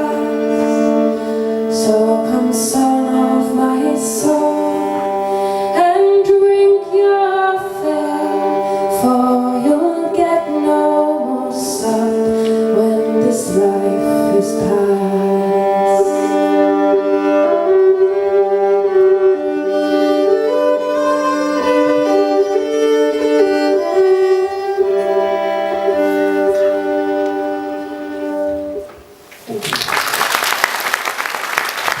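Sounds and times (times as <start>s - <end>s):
folk melody over drone: 0.0s - 28.9s
audience applause: 29.4s - 32.0s.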